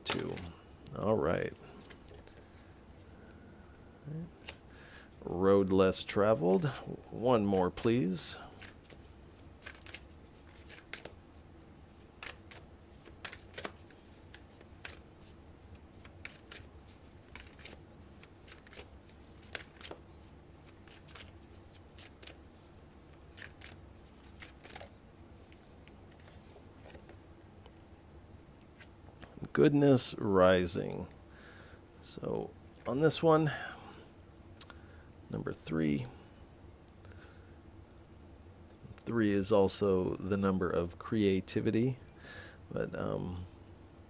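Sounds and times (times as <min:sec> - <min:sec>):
cards being shuffled: 0:00.0 - 0:00.6, 0:06.1 - 0:27.2
faint low hum: 0:00.0 - 0:44.0.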